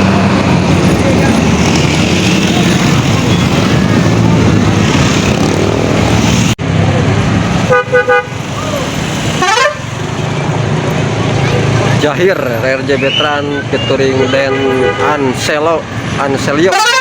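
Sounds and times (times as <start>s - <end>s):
traffic and engine noise: 0.0s - 17.0s
bus musical horn: 7.7s - 8.4s, 9.4s - 9.9s, 14.2s - 15.3s, 16.7s - 17.0s.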